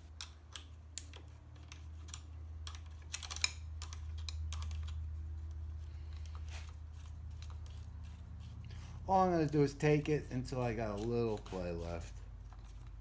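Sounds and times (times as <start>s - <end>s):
steady low hum: 0.0s - 13.0s
wrenches clicking on metal: 0.2s - 5.0s.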